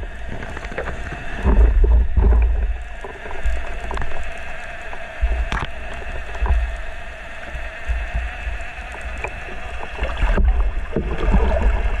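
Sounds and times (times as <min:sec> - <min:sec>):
boat motor hum underwater: 0:00.0 - 0:12.0
faint clicks: 0:00.2 - 0:10.5
low rumbling thumps: 0:01.4 - 0:04.0, 0:07.8 - 0:12.0.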